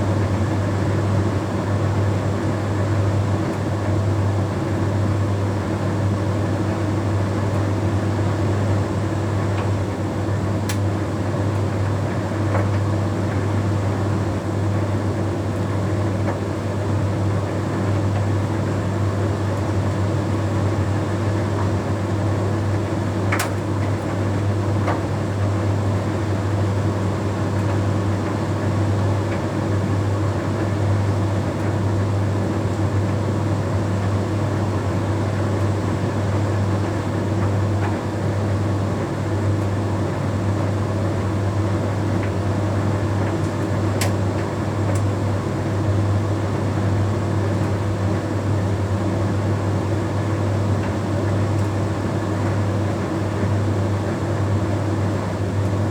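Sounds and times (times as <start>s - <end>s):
faint clicks in drum: 10.7s - 10.9s, 23.3s - 23.9s, 43.2s - 45.1s.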